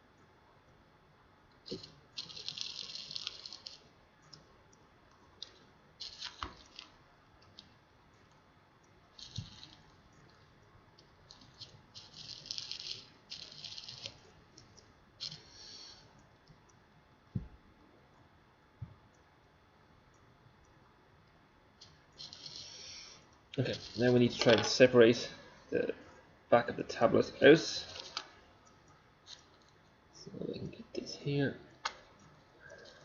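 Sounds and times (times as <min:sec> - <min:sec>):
screwdriver turning screws: 0:09.2 - 0:09.8, 0:11.3 - 0:14.2.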